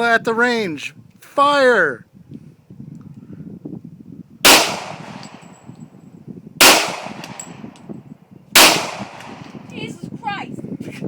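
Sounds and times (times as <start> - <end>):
pistol shots: 4.4 - 5.5, 6.6 - 7.6, 8.6 - 9.6.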